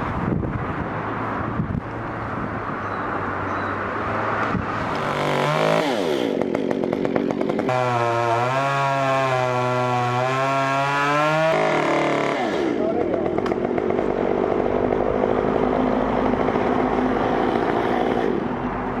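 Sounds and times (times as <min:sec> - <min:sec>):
chainsaw engine running: 0:04.8 - 0:18.6.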